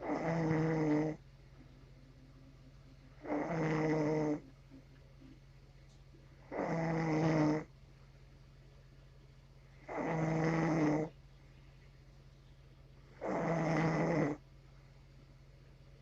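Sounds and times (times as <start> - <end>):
person snoring: 0.0 - 1.2, 3.2 - 4.4, 6.5 - 7.7, 9.9 - 11.1, 13.2 - 14.4
low steady hum: 0.0 - 16.0.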